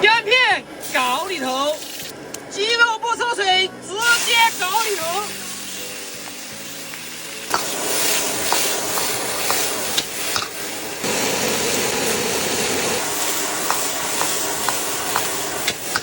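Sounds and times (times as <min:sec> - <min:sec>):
chicken sizzling in hot oil: 0:00.8 - 0:02.1, 0:04.0 - 0:16.0
stir-frying clicks and scrapes: 0:04.4 - 0:10.8, 0:13.3 - 0:16.0.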